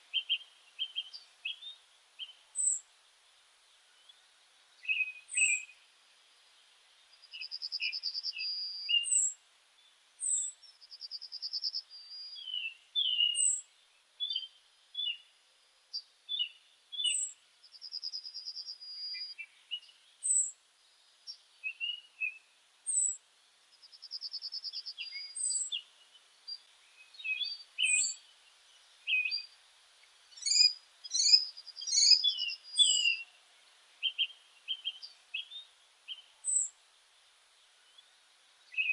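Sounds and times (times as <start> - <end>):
bird chirps: 0.1 - 2.8, 4.8 - 5.8, 7.1 - 9.4, 10.2 - 15.3, 16.0 - 23.2, 23.8 - 29.6, 30.3 - 33.4, 34.0 - 36.8, 37.8 - 38.9.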